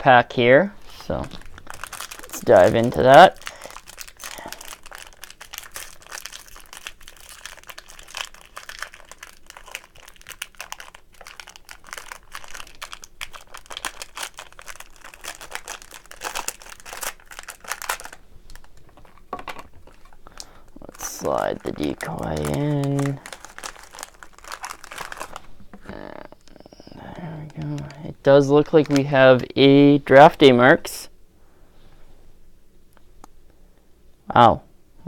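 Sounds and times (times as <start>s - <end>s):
foil wrapper crinkling: 0.9s - 25.6s, 27.4s - 29.5s.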